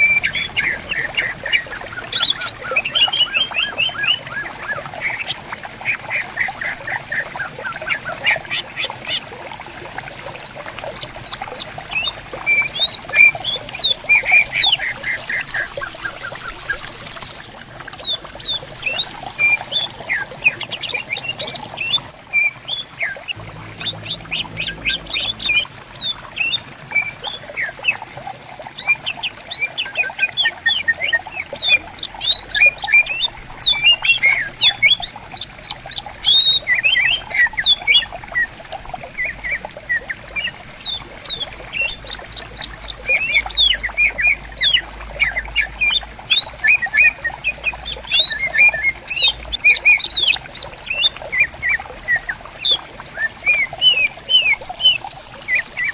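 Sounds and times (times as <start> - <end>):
birds chirping and whistling: 0.0 - 5.1
stream flowing: 0.0 - 55.9.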